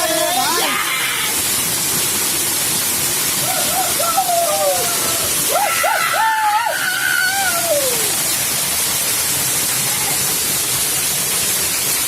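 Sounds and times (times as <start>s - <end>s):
voice calling out: 0.0s - 1.4s, 9.8s - 10.4s
waterfall rushing: 0.0s - 12.0s.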